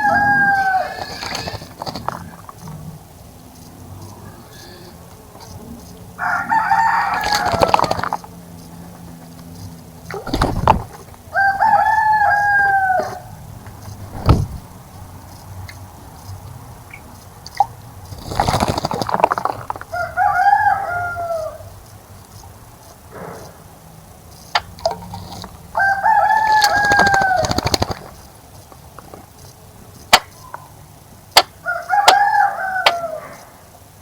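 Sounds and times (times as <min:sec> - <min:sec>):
rooster crowing: 0:00.0 - 0:02.3, 0:04.1 - 0:09.0, 0:10.3 - 0:14.6, 0:19.9 - 0:21.9, 0:25.7 - 0:28.0, 0:31.6 - 0:33.7
bird splashing in water: 0:00.0 - 0:02.6, 0:06.8 - 0:08.3, 0:10.0 - 0:11.2, 0:14.0 - 0:14.9, 0:26.2 - 0:28.2.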